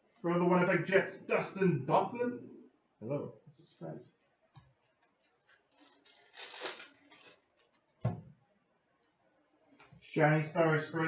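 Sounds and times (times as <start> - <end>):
soft knock: 8.0 - 8.4.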